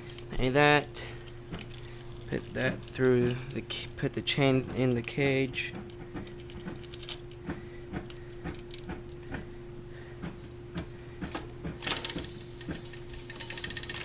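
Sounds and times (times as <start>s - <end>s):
bicycle chain clicking and rattling: 0.0s - 5.5s, 6.2s - 7.4s, 11.8s - 14.0s.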